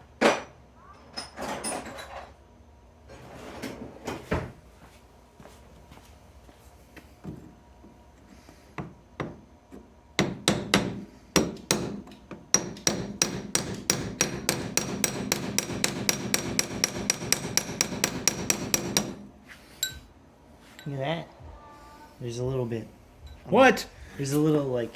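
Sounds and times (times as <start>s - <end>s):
hammer tapping: 10.2s - 19.2s.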